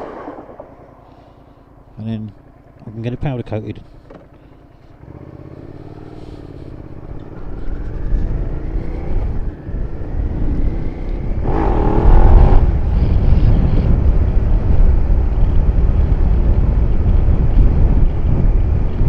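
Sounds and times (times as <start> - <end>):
wind rushing over microphone: 0.0 - 1.2, 6.4 - 19.0
motorcycle engine accelerating: 0.0 - 19.0.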